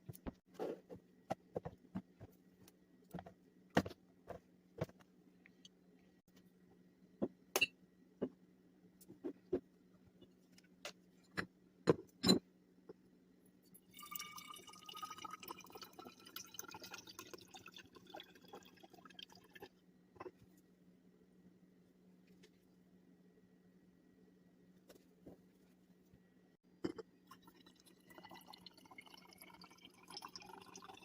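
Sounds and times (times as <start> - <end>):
liquid pouring into container: 13.9 - 19.8, 27.2 - 31.0.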